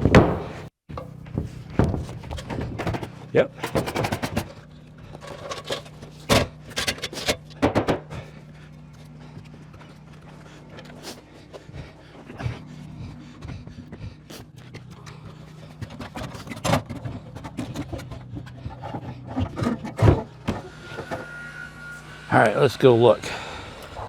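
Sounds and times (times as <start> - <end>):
knocks clicks and scrapes: 0.0 - 8.2, 14.6 - 21.3
steady low hum: 0.1 - 24.0.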